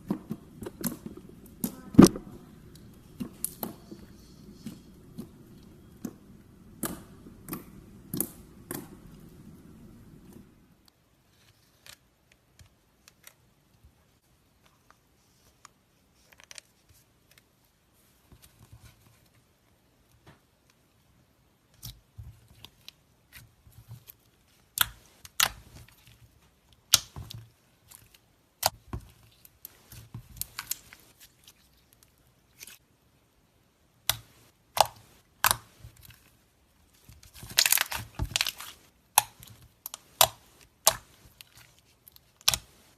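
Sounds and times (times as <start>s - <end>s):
slime clicking and popping: 0.0s - 10.5s, 34.0s - 35.7s, 37.4s - 41.2s, 42.4s - 42.8s.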